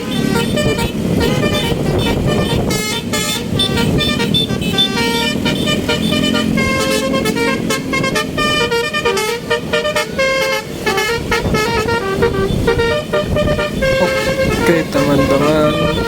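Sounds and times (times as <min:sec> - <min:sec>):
bus air horn playing a tune: 0:00.0 - 0:16.0
traffic rumble: 0:00.0 - 0:16.0.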